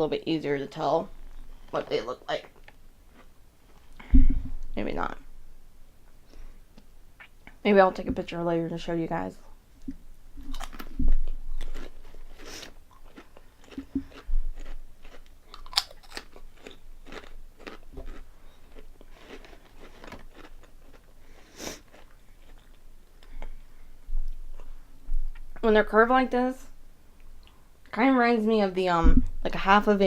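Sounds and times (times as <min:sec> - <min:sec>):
crunching and chewing of crisp snacks: 0:02.5 - 0:04.0, 0:10.4 - 0:23.7.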